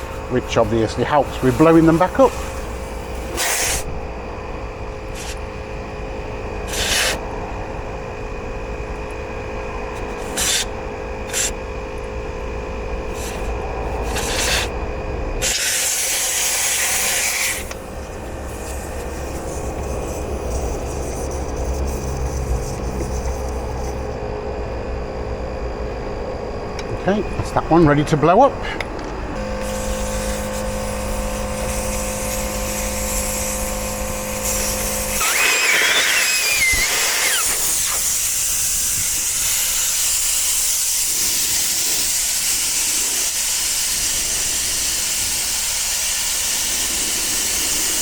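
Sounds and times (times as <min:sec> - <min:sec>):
air hissing at tyre valve: 0:00.0 - 0:04.0, 0:05.1 - 0:05.5, 0:06.6 - 0:07.3, 0:09.9 - 0:11.6, 0:13.0 - 0:14.8, 0:15.4 - 0:24.1, 0:29.4 - 0:48.0.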